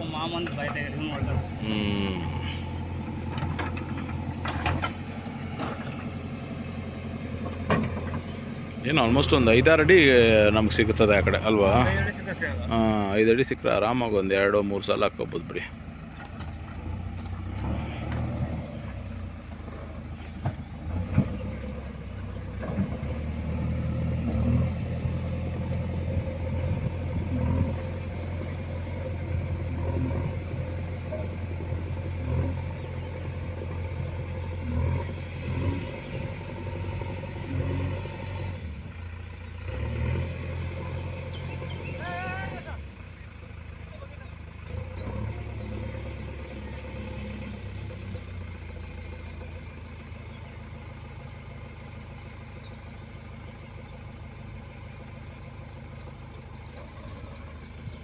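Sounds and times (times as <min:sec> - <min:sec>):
large engine humming: 0:00.0 - 0:58.0
knocks and clanks: 0:03.2 - 0:06.1, 0:07.4 - 0:08.3.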